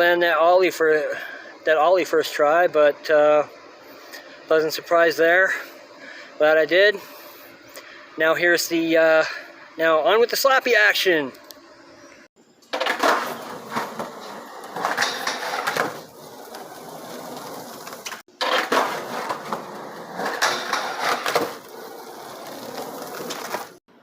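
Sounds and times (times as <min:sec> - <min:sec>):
skateboard wheels rolling on pavement: 0:12.6 - 0:23.8
skateboard grinding on curb: 0:12.7 - 0:23.8.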